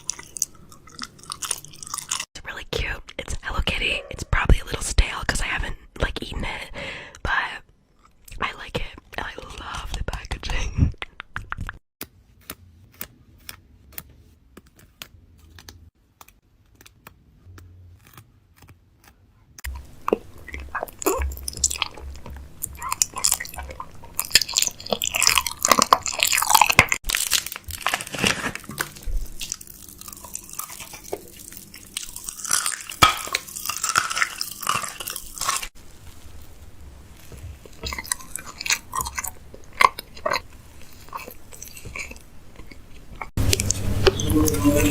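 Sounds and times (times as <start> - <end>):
chewing and crunching food: 0.0 - 2.3, 7.7 - 10.6, 14.6 - 44.9.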